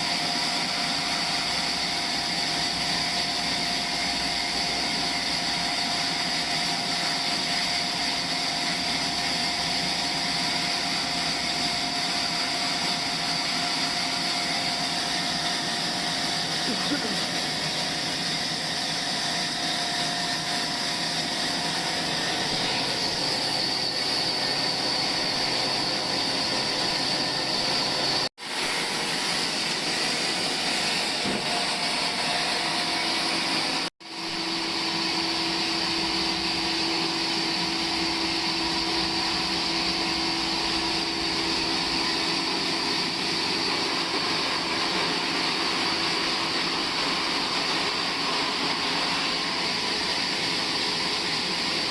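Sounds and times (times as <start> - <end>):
sawmill machinery whirring: 0.0 - 51.9.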